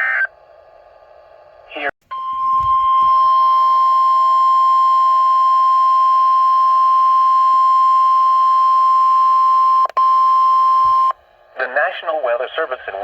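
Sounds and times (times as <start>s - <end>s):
steady high-pitched alarm beep: 2.1s - 11.1s.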